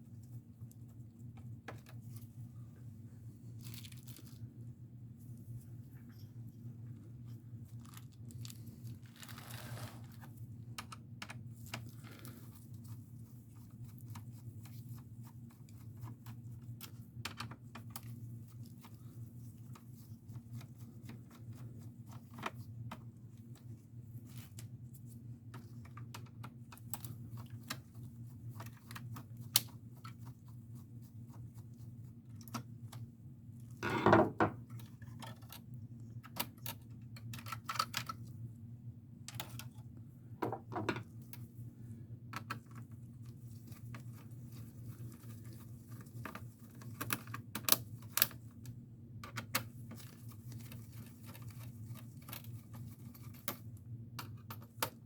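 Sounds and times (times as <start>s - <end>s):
crinkling rustle: 3.4s - 4.6s, 7.0s - 10.4s.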